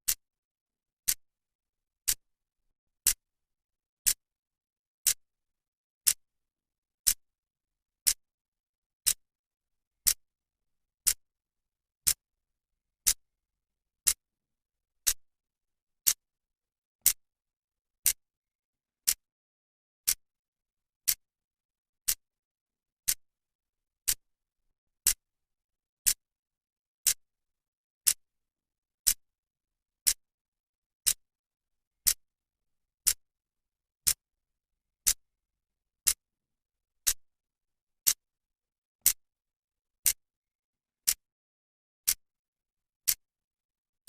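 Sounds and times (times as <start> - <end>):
clock ticking: 19.0 - 19.3.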